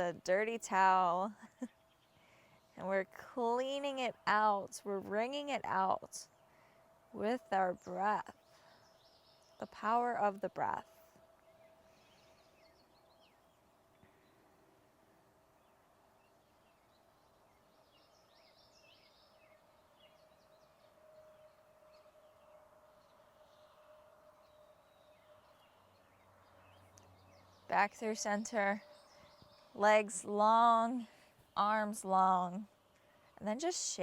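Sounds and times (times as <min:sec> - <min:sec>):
distant bird chirps: 0:10.8 - 0:31.6.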